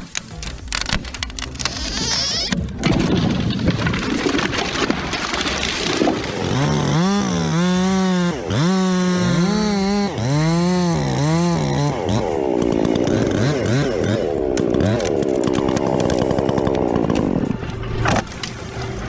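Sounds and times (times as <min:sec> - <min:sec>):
chainsaw revving and cutting: 0:03.9 - 0:19.0.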